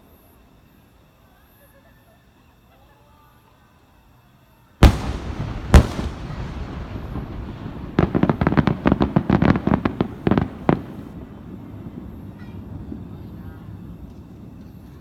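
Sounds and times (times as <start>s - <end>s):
rumbling echo: 4.8s - 13.1s
firework booms: 4.8s - 14.8s
firework crackling reports: 4.8s - 15.0s.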